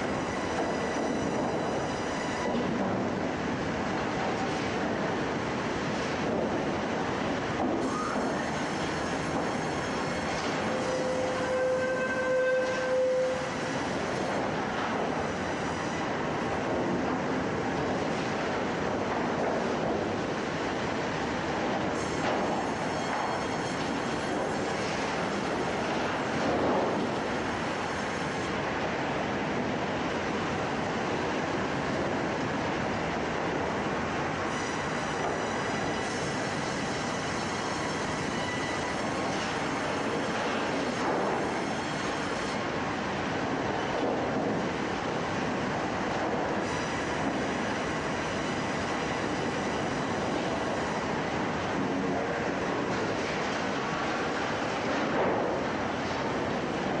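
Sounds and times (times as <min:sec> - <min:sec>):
high steady squeal: 0:00.0 - 0:02.8, 0:07.8 - 0:16.4, 0:22.0 - 0:26.4, 0:34.5 - 0:42.8
sawmill mechanical rumble: 0:00.0 - 0:57.0
faint high saw blade whine: 0:07.8 - 0:14.4, 0:34.5 - 0:42.6
band saw machinery running: 0:07.8 - 0:16.6, 0:22.0 - 0:28.6, 0:34.5 - 0:45.7.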